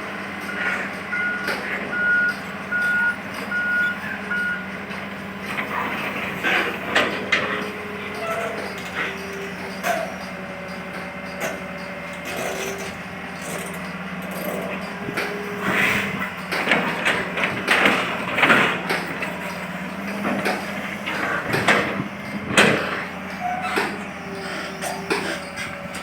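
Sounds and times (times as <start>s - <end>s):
excavator engine running: 0.0s - 26.0s
knocks and clattering: 16.4s - 24.0s.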